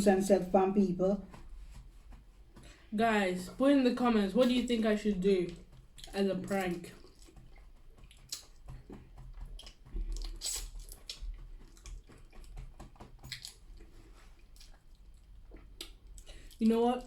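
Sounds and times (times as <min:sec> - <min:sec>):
chewing and crunching: 0:01.2 - 0:17.0
wet mouth sounds: 0:05.5 - 0:16.7.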